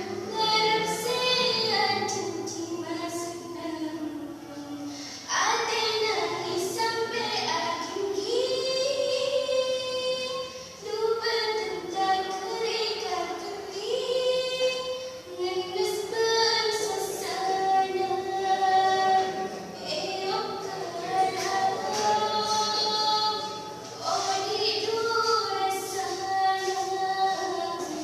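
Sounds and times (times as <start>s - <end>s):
woman singing unaccompanied: 0.0s - 28.0s
singer breathing: 4.8s - 5.3s.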